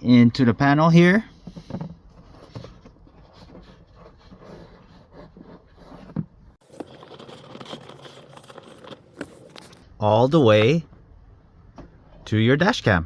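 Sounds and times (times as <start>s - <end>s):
cable rustling in trim panels: 6.6s - 10.8s.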